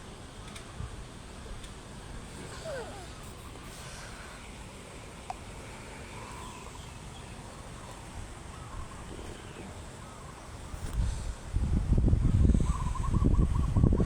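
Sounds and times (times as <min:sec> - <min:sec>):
wind buffeting microphone: 0:00.7 - 0:14.0
faint chirp: 0:02.3 - 0:10.8.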